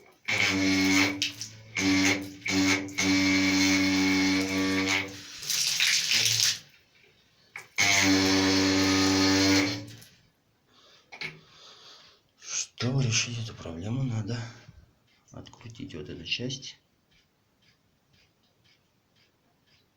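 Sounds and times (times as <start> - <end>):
water tap humming: 0.0 - 6.9, 7.6 - 10.2.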